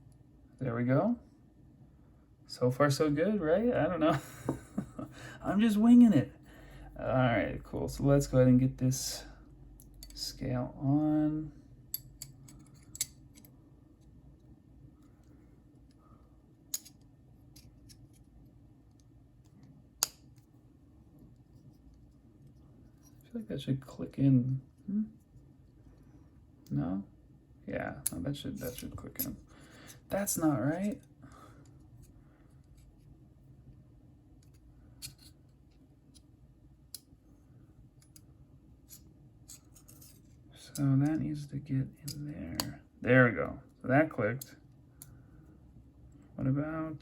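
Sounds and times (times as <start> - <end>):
metal knife parts clicking: 11.9 - 13.5.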